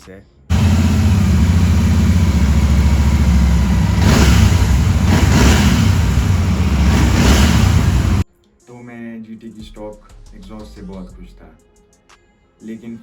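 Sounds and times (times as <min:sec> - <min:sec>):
motorcycle engine revving: 0:00.5 - 0:08.2.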